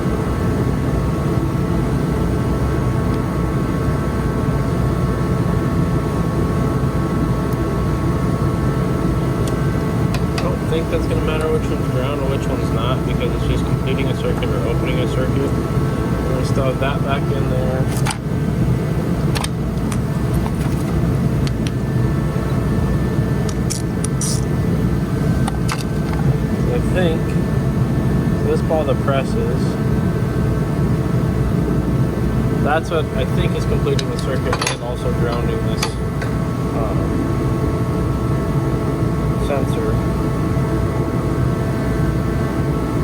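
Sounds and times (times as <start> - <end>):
low mechanical rumble: 0.0 - 43.0.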